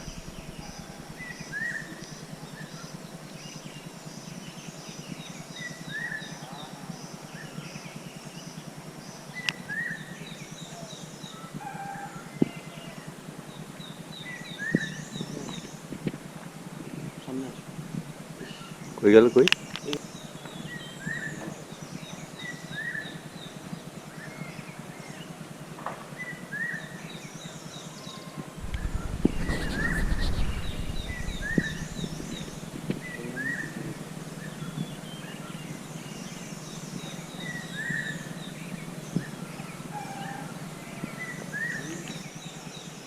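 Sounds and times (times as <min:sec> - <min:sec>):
low rumble: 0:00.0 - 0:02.6, 0:28.6 - 0:39.5
bird rising call: 0:28.6 - 0:41.8.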